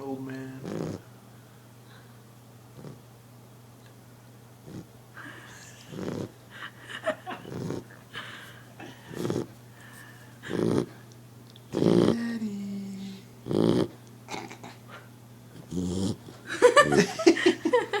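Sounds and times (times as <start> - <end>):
puppy snoring: 0.5 - 1.1, 2.7 - 3.0, 4.6 - 6.4, 7.3 - 8.0, 8.8 - 9.6, 10.4 - 11.0, 11.7 - 17.2.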